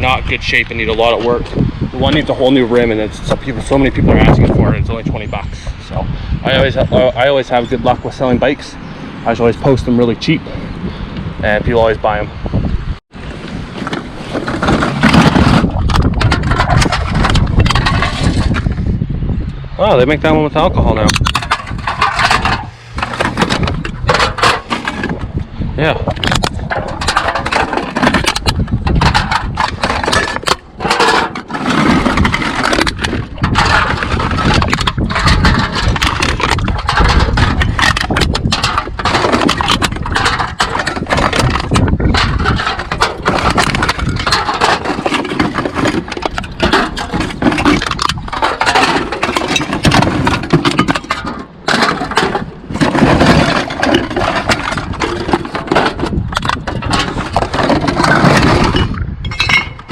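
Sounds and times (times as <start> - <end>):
cans clattering and crinkling: 13.8 - 18.7, 21.0 - 25.2, 26.1 - 59.9.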